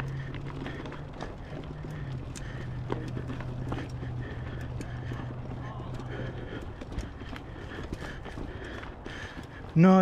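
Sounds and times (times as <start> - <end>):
steady low hum: 0.0 - 9.7
bike rattling over dirt trail: 0.0 - 10.0.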